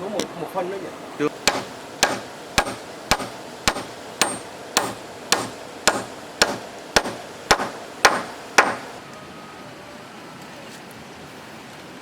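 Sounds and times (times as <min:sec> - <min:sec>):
hammer driving nail into wood: 0:01.4 - 0:09.0.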